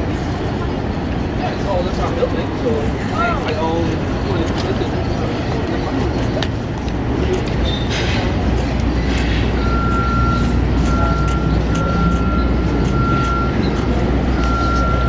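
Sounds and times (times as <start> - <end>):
street traffic rumble: 0.0 - 15.0
high flat beep: 9.6 - 15.0.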